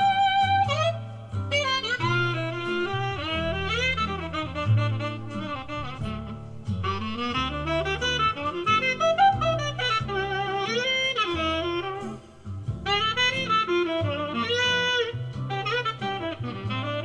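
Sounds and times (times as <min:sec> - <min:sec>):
jazz music through speaker: 0:00.0 - 0:17.0.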